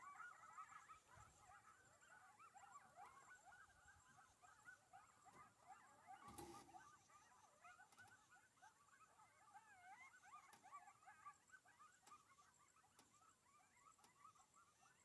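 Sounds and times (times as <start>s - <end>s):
coyotes yipping and howling: 0.0s - 15.0s.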